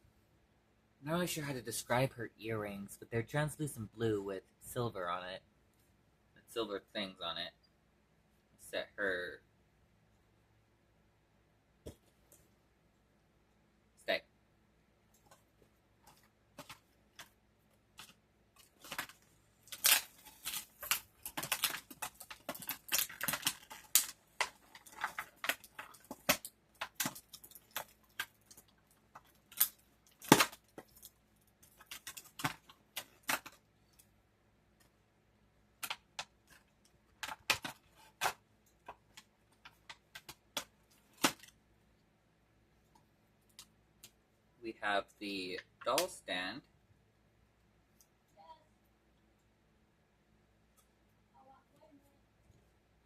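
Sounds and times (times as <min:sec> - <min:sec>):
plastic parts clicking: 0:18.0 - 0:34.1.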